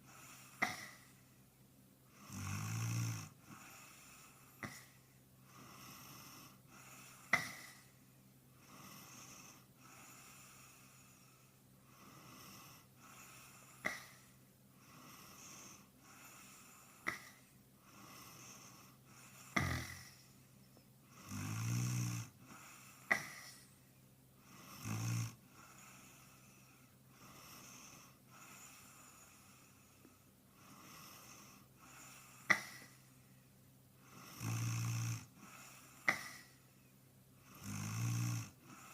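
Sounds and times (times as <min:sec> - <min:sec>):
man snoring: 0:00.1 - 0:01.1, 0:02.1 - 0:04.9, 0:05.5 - 0:07.9, 0:08.6 - 0:14.2, 0:14.8 - 0:20.3, 0:21.1 - 0:23.7, 0:24.4 - 0:30.0, 0:30.6 - 0:33.0, 0:34.0 - 0:36.6, 0:37.4 - 0:38.9
soft breaths: 0:03.3 - 0:37.7, 0:38.4 - 0:38.9.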